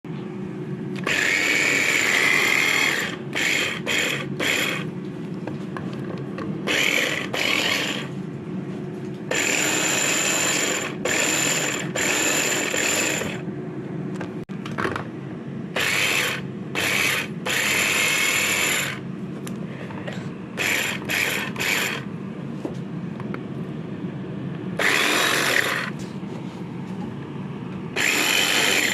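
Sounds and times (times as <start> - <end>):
kitchen chopper motor hum: 0.4 - 5.0, 5.7 - 13.6, 15.7 - 19.1, 20.4 - 22.2, 24.6 - 26.1, 27.6 - 28.9
harsh grinding noise: 1.0 - 5.0, 6.5 - 8.2, 9.3 - 13.4, 15.7 - 19.1, 20.5 - 22.1, 24.8 - 26.0, 27.9 - 28.9.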